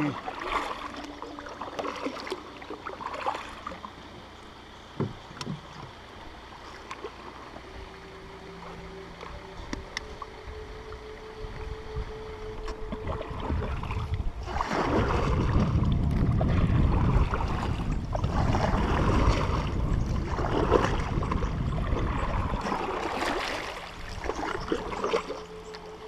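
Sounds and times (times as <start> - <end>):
water splashing around kayak: 0.0 - 26.0
wind rumbling on microphone: 7.1 - 26.0.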